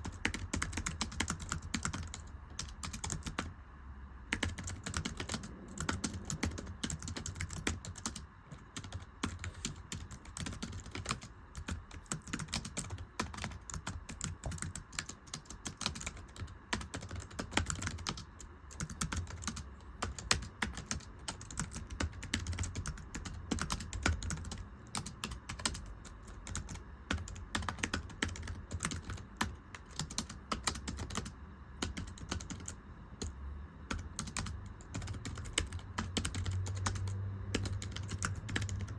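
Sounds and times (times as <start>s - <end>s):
rapid typing on keyboard: 0.0s - 3.5s, 4.3s - 38.9s.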